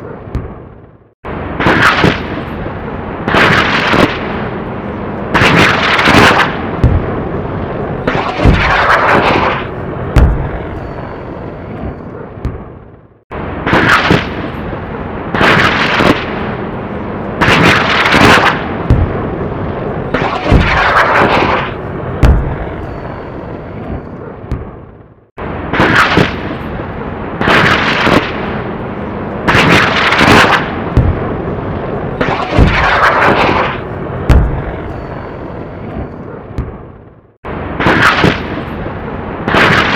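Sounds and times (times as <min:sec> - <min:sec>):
rocket blasts with whoosh: 0:00.0 - 0:39.9
low thuds: 0:06.6 - 0:07.4, 0:10.1 - 0:13.2, 0:18.8 - 0:19.7, 0:22.2 - 0:22.9, 0:34.2 - 0:35.1.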